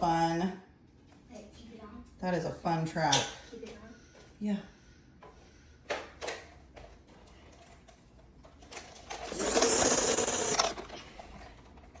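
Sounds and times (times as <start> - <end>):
toy train electric motor whirring: 8.7 - 11.0.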